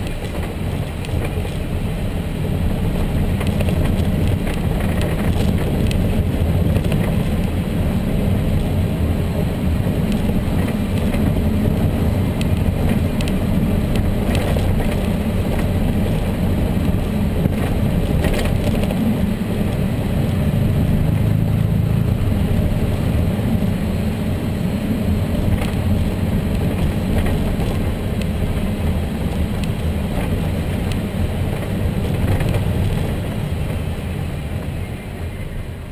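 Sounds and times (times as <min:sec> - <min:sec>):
sharp clicks and knocks: 0:00.0 - 0:01.6, 0:03.2 - 0:07.5, 0:10.0 - 0:19.0, 0:25.4 - 0:28.4, 0:29.3 - 0:33.8
car engine low rumble: 0:00.0 - 0:35.9.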